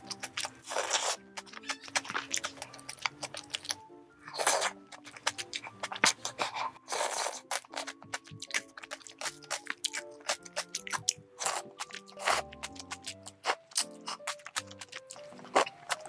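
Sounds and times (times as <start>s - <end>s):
background music: 0.0s - 16.0s
crunchy chewing: 0.0s - 16.0s.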